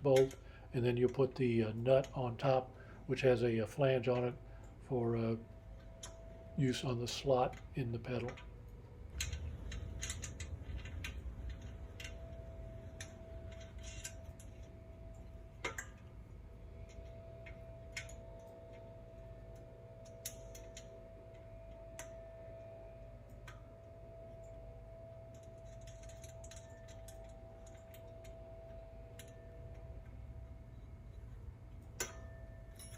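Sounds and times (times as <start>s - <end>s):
faint steady hum: 0.0s - 32.9s
metallic clicks of bolts: 9.1s - 12.2s, 12.9s - 14.7s, 31.8s - 32.9s.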